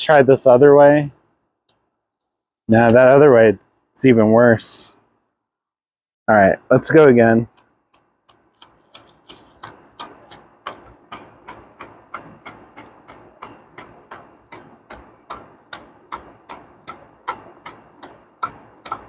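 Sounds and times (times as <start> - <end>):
spark wheel rasping clicks: 7.5 - 19.0.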